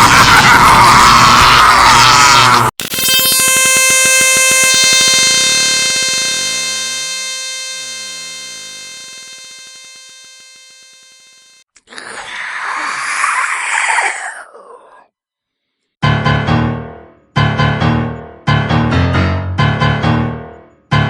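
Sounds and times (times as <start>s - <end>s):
buzzing synthesized tone: 0.0s - 11.6s.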